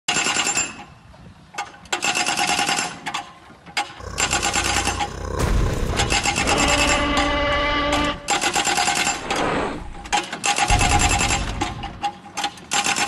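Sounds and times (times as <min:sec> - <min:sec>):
low rumble: 0:04.0 - 0:08.3, 0:09.8 - 0:12.0
compactor hammering ground: 0:04.0 - 0:09.0.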